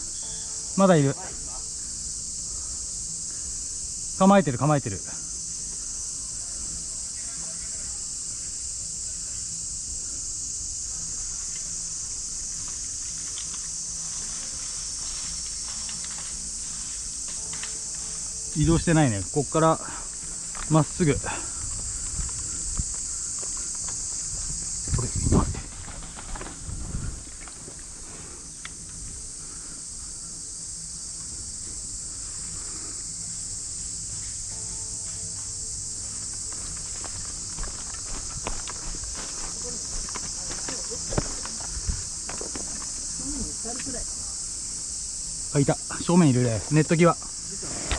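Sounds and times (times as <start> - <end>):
insects shrilling: 0.0 - 47.9
faint ticks: 12.6 - 18.3, 28.6 - 29.0.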